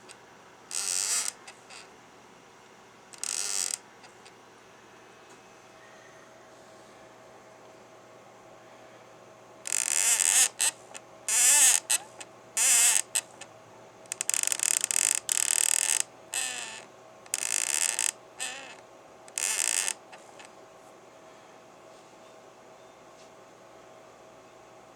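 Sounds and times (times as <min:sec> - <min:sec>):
toy car high wavering squeaks: 0:09.7 - 0:12.0, 0:12.6 - 0:13.2.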